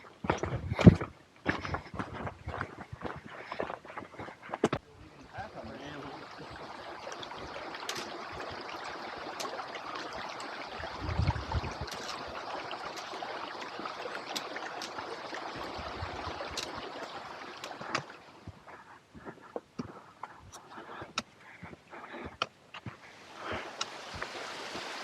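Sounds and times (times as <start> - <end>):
stream rushing: 5.2 - 18.4, 23.0 - 25.0.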